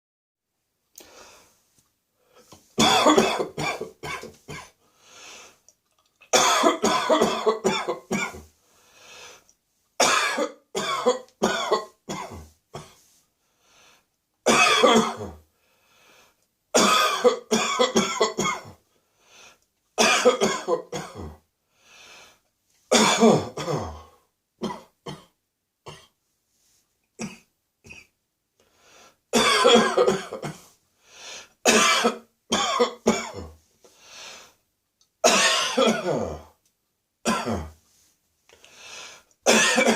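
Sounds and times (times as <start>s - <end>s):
person coughing: 2.8s - 4.8s, 6.4s - 8.5s, 10.0s - 13.0s, 14.5s - 15.4s, 16.8s - 18.8s, 20.0s - 21.4s, 22.9s - 26.1s, 29.4s - 30.7s, 31.7s - 33.6s, 35.2s - 36.6s, 37.3s - 37.8s, 39.5s - 39.9s.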